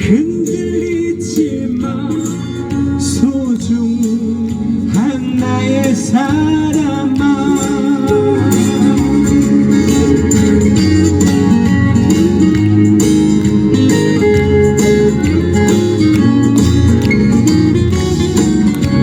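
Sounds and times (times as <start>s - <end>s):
person singing folk song: 0.0s - 13.4s
plucked and strummed guitar: 0.0s - 19.0s.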